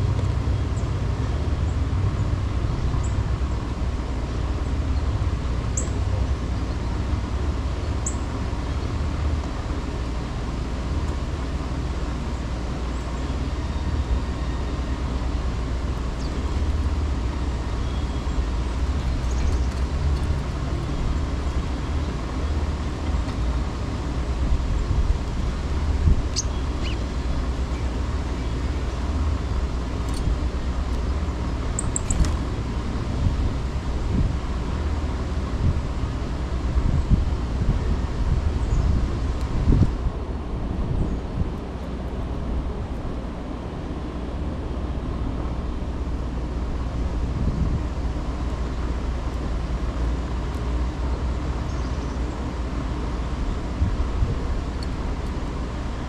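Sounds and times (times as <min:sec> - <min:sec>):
wind rumble on microphone: 0:00.0 - 0:09.6, 0:15.4 - 0:49.3, 0:53.3 - 0:56.0
city traffic: 0:00.0 - 0:56.0
bird chirps: 0:26.3 - 0:27.1.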